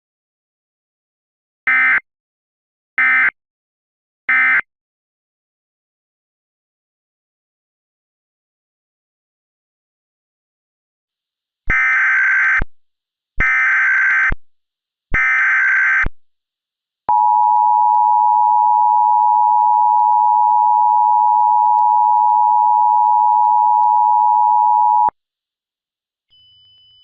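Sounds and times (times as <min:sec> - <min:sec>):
two-tone alarm tone: 0:17.1 - 0:25.1.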